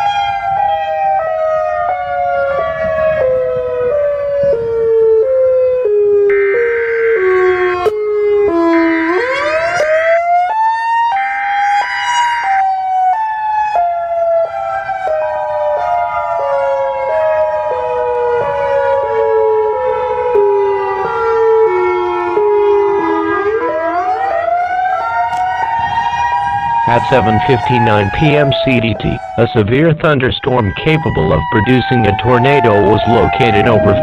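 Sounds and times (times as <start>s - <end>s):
siren stepping in pitch: 0.0s - 34.0s
steady high tone: 26.8s - 34.0s.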